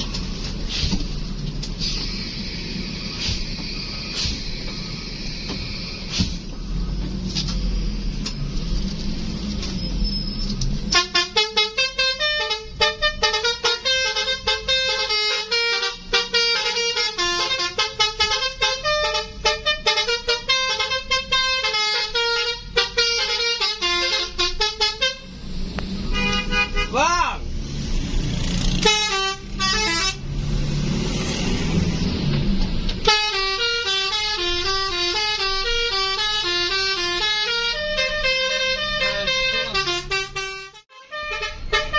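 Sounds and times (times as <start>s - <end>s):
multi-tone horn melody: 11.0s - 25.2s, 26.1s - 26.9s, 28.8s - 30.2s, 33.0s - 41.9s.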